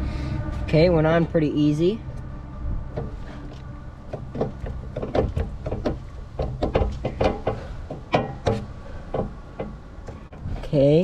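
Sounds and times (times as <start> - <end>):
low hum: 0.0 - 11.0.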